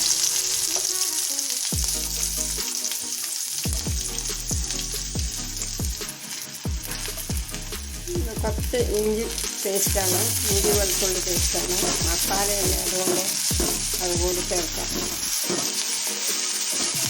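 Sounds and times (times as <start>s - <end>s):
food sizzling in hot oil: 0.0s - 17.0s.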